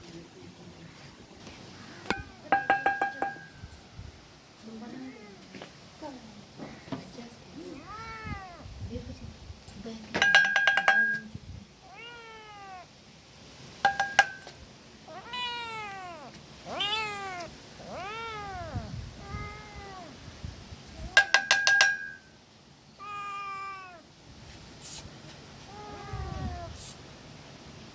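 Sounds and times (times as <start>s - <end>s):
cats meowing: 7.7s - 8.7s, 11.8s - 12.9s, 15.1s - 20.2s, 23.0s - 24.1s, 25.6s - 27.0s.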